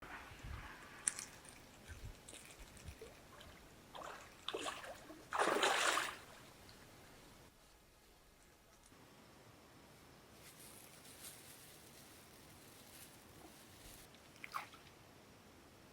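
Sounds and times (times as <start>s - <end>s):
water splashing and sloshing: 0.0s - 7.4s, 13.6s - 15.0s.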